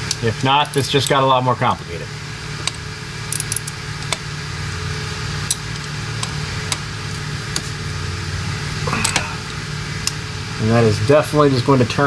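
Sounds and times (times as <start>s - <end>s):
low shop hum: 0.0s - 12.0s
wrench and socket clicks: 0.1s - 1.2s, 3.3s - 4.2s.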